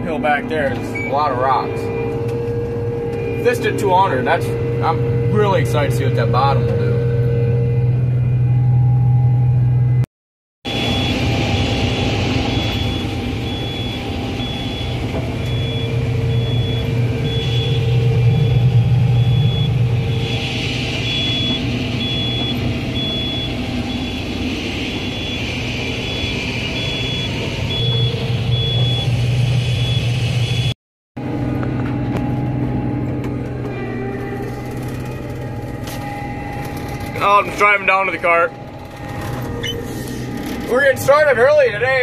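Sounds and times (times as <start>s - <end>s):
harvester engine running: 0.0s - 10.0s, 10.7s - 42.0s
high electronic beep: 0.8s - 7.1s, 10.7s - 30.8s, 39.3s - 40.2s.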